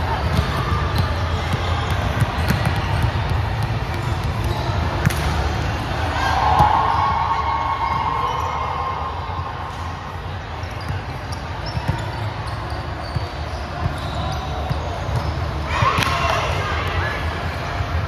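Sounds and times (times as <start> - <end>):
players' voices: 0.0 - 18.0
volleyball being hit: 2.3 - 5.5.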